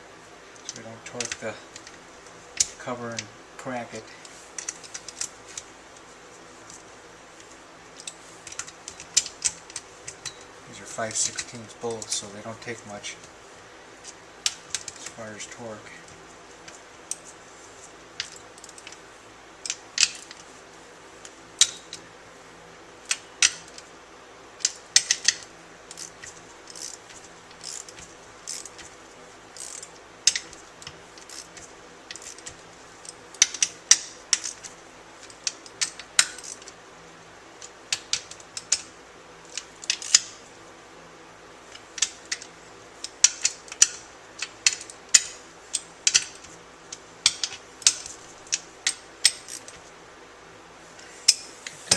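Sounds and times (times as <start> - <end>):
socket wrench clicking: 21.6 - 22.0, 23.1 - 23.9, 24.6 - 28.9, 29.6 - 36.8, 39.5 - 40.4, 41.7 - 49.8.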